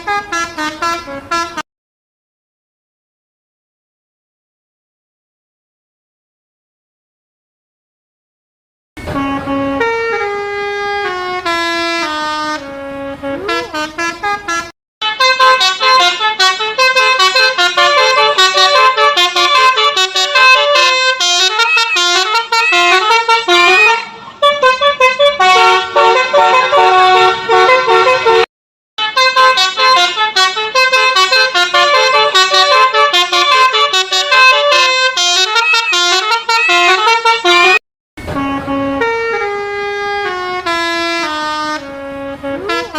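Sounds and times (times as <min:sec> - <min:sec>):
musical bus horns playing melodies: 0:00.0 - 0:01.6, 0:09.0 - 0:42.9.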